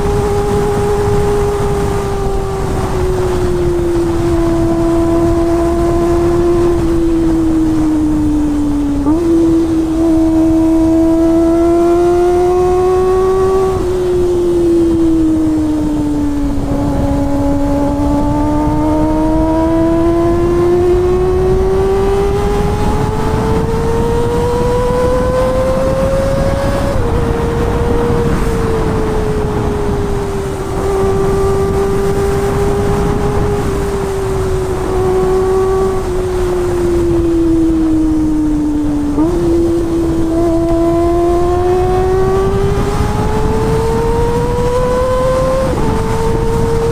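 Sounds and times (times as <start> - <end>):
motorcycle engine at high revs: 0.0 - 46.9.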